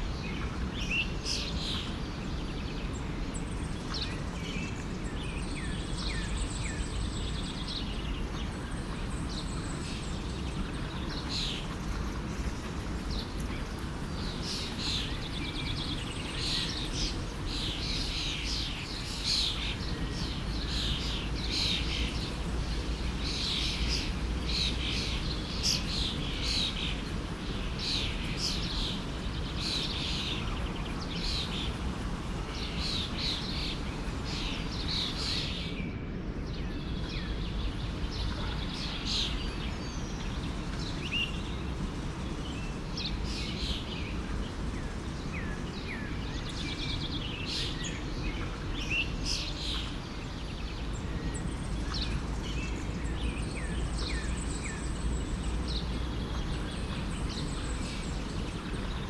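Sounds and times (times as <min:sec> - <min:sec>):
birds chirping and trilling: 0:14.2 - 0:35.8.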